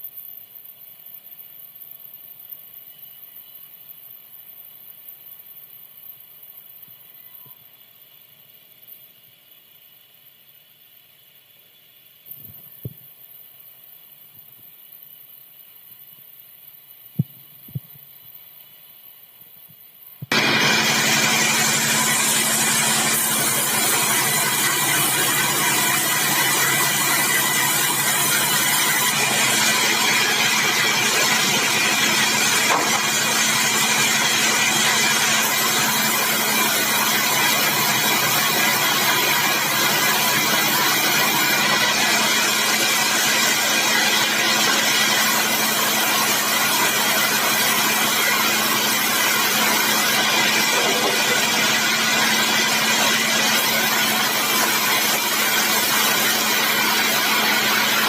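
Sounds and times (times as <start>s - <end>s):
steady whining tones: 20.3s - 41.9s, 48.4s - 58.0s
sawmill machinery drone: 20.3s - 58.0s.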